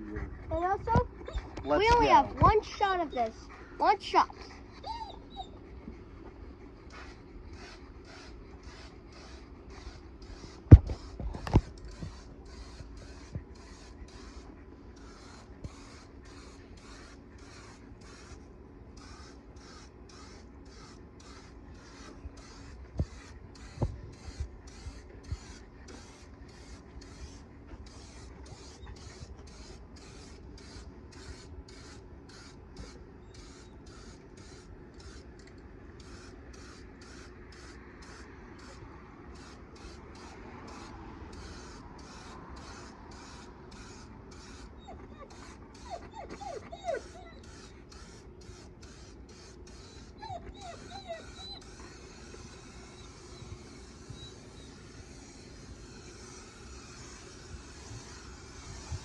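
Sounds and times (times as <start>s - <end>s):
spray paint cans hissing: 6.8s - 46.4s, 47.0s - 59.0s.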